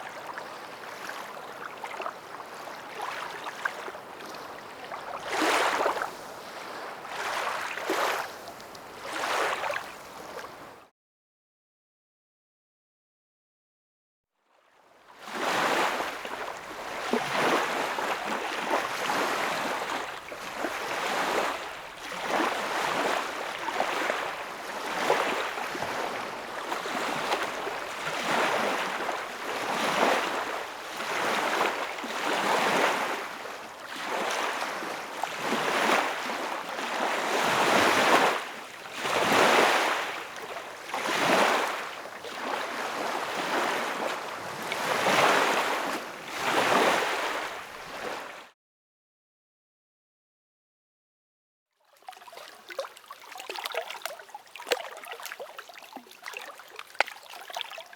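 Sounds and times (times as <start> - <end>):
water rushing and splashing: 52.0 - 57.9.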